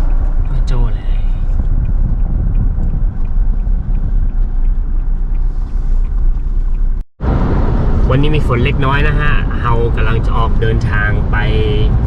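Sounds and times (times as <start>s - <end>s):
faint ticks: 0.0s - 7.0s
vehicle driving rumble: 0.0s - 12.0s.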